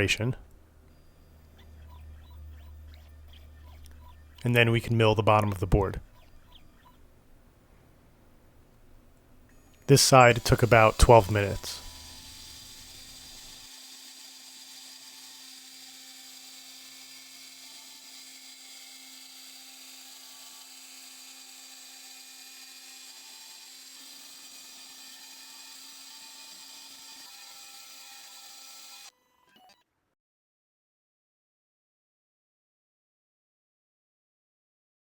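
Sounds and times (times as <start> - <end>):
milling spindle high whine: 9.5 - 15.0.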